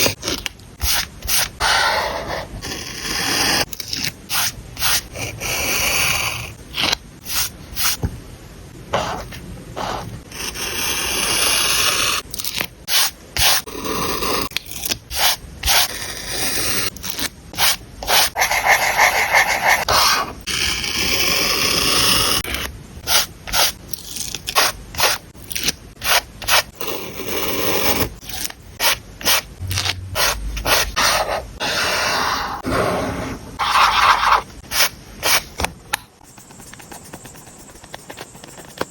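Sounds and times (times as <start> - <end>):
paper and stickers rubbing: 32.6 - 35.6, 36.2 - 38.9.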